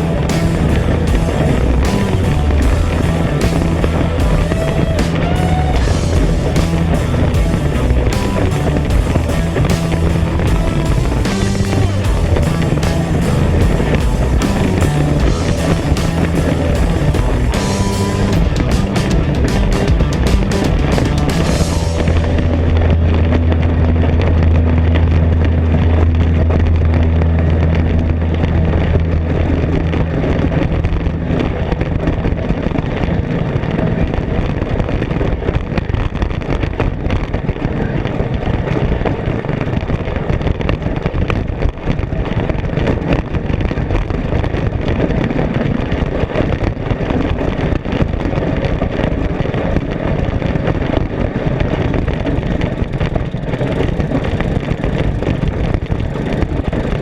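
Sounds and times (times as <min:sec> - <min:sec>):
low hum: 0:00.0 - 0:57.0
vehicle engine at speed: 0:00.0 - 0:57.0
clatter from rough ground: 0:06.2 - 0:57.0
wind: 0:21.4 - 0:57.0.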